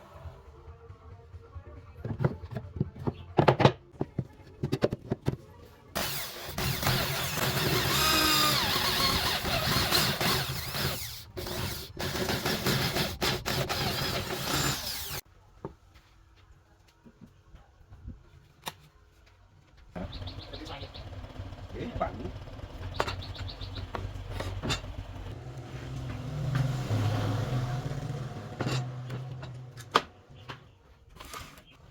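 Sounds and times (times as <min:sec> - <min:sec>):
handheld power tool running: 0:06.0 - 0:15.2.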